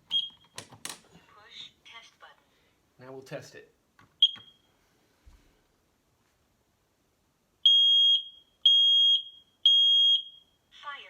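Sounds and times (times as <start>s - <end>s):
fire alarm beeps: 0.1s - 0.6s, 4.2s - 4.7s, 7.6s - 10.6s.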